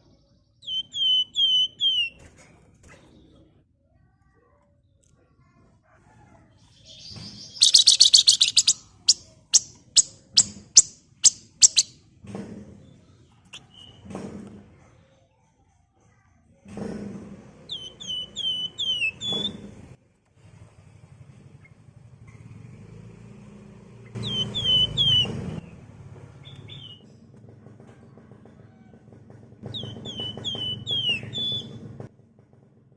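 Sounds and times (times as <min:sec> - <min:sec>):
bird chattering high notes: 0:00.6 - 0:02.2, 0:07.4 - 0:12.0, 0:24.2 - 0:25.3
sharp bird chirps: 0:00.6 - 0:02.2, 0:06.9 - 0:12.0, 0:17.7 - 0:19.5, 0:24.2 - 0:25.4.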